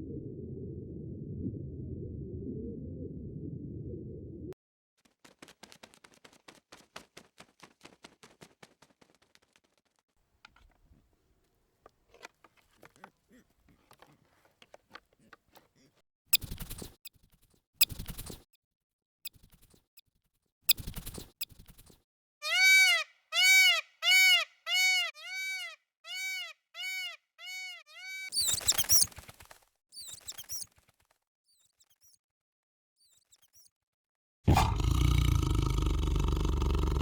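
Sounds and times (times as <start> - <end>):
animal calling: 22.4 - 29.0, 34.5 - 37.0.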